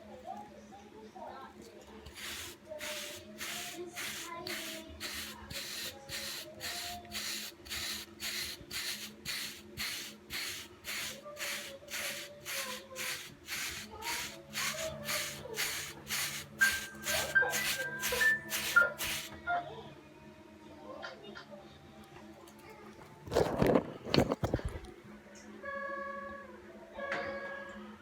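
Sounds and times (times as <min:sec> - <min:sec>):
hairbrush brushing hair: 0:02.0 - 0:19.4.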